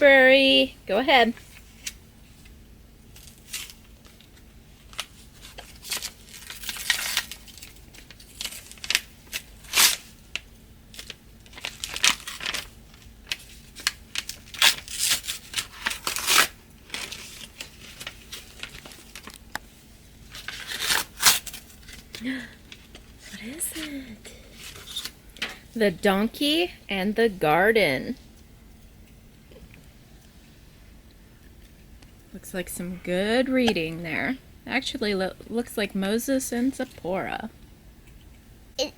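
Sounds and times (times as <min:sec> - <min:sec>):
package wrapping ripping and crinkling: 0:03.1 - 0:19.6, 0:20.2 - 0:23.1, 0:24.5 - 0:25.6.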